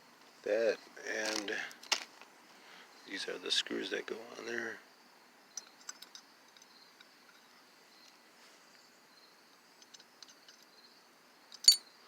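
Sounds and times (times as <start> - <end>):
small screws and metal parts clicking: 5.5 - 8.2, 9.7 - 10.8, 11.5 - 11.9.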